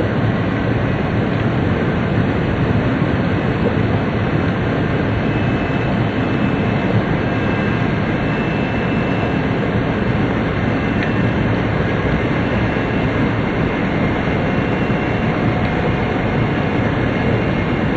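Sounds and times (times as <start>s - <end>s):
faint high whine: 4.8s - 17.9s.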